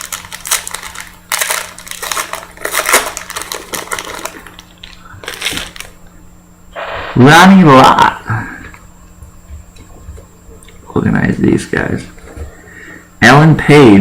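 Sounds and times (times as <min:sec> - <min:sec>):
trading cards rustling and clicking: 0:00.0 - 0:06.0.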